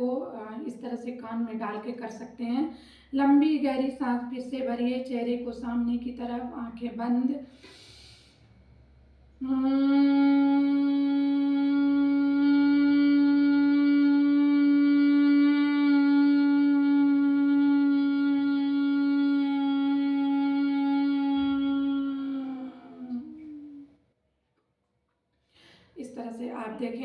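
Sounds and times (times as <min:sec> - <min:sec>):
woman humming one note: 0:09.4 - 0:23.9.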